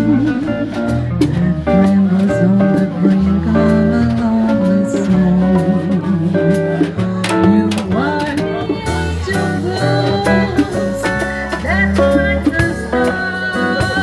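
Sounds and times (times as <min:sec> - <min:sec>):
band playing jazz blues: 0:00.0 - 0:14.0
bass line: 0:00.0 - 0:14.0
guitar: 0:00.0 - 0:14.0.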